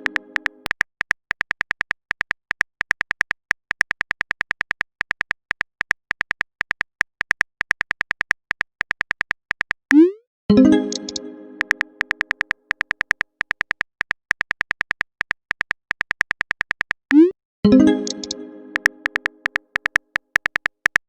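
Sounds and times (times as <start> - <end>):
short digital typing clicks: 7.4 - 21.0.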